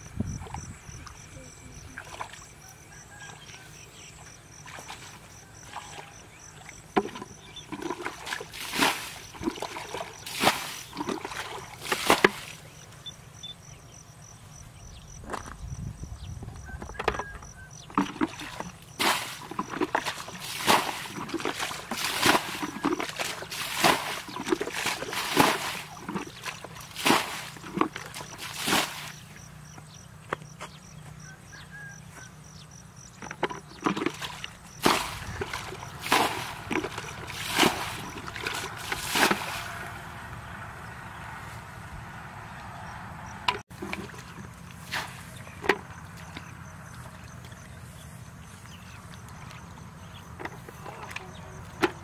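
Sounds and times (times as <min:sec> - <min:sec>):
water splashing and sloshing: 0:00.0 - 0:13.2, 0:16.8 - 0:29.8, 0:33.0 - 0:41.5, 0:42.6 - 0:52.0.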